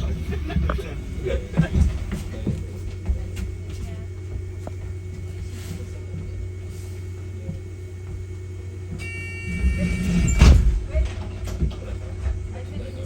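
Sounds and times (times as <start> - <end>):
bus running hum: 0.0 - 13.0
faint steady whine: 0.0 - 13.0.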